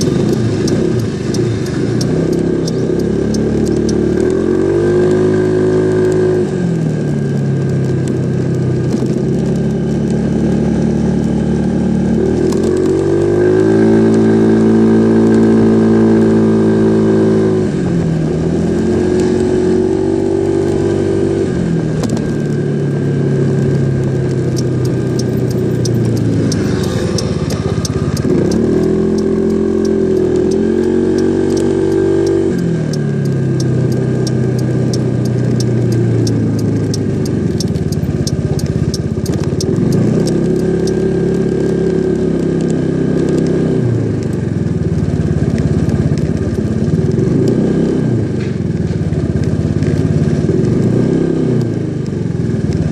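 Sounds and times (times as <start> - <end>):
scooter engine revving: 0.0 - 6.7, 9.8 - 52.9
light ticking: 0.0 - 15.5, 22.0 - 47.6.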